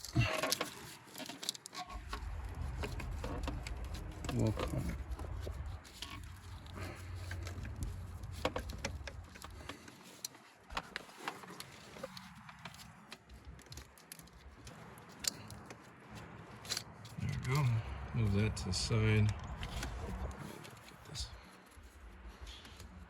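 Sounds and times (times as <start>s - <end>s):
low hum: 1.9s - 9.7s.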